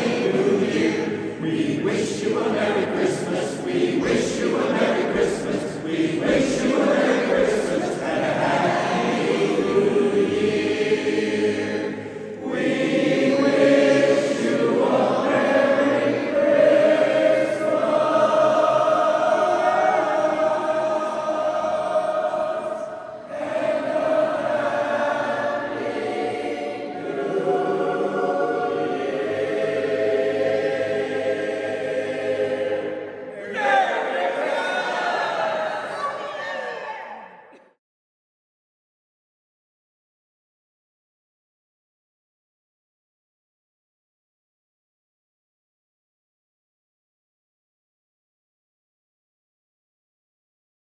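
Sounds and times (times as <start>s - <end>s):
chorus singing in harmony: 0.0s - 37.7s.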